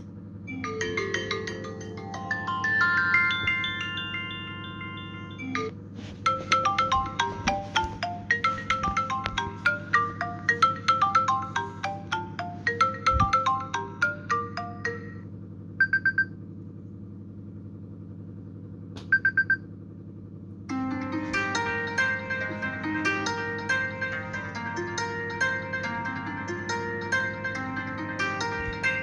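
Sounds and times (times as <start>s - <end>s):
steady low hum: 0.0s - 29.0s
phone ringtone melody: 0.5s - 15.3s, 20.7s - 29.0s.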